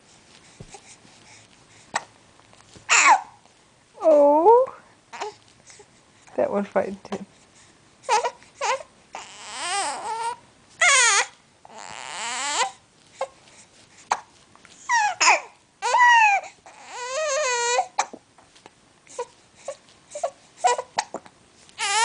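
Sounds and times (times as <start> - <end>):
baby crying: 2.9 - 3.4, 8.1 - 12.8, 14.9 - 18.1, 21.8 - 22.0.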